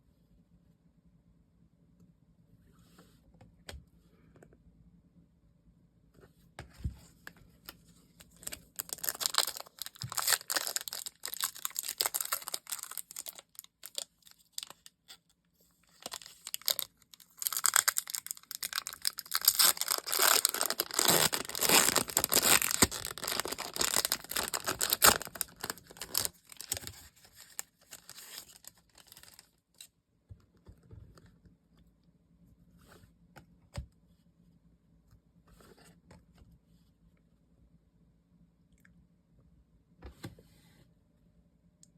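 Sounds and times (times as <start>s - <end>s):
packaging torn and crinkled: 8.2s - 15.0s, 16.0s - 29.9s.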